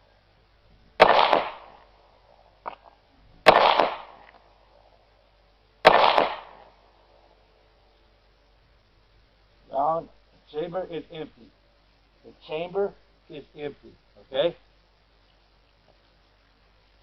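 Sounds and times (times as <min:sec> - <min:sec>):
pistol shots with echo: 0:01.0 - 0:01.8, 0:03.5 - 0:04.3, 0:05.8 - 0:06.7.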